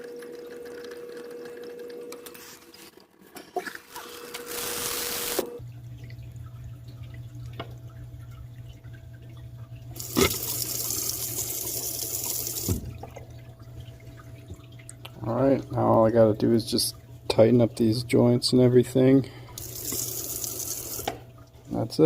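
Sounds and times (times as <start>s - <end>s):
faucet water running: 3.6s - 22.0s
low steady hum: 5.5s - 22.0s.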